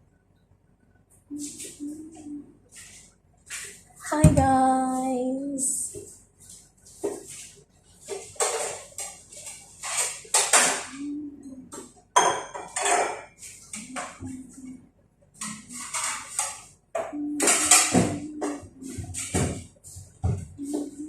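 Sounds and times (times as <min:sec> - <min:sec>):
utensils clattering on pots and pans: 0:08.1 - 0:11.2, 0:11.8 - 0:14.3, 0:15.4 - 0:19.6.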